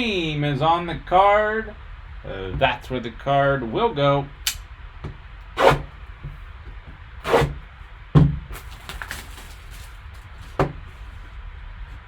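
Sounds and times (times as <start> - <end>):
cardboard box handling noise: 8.5 - 11.3.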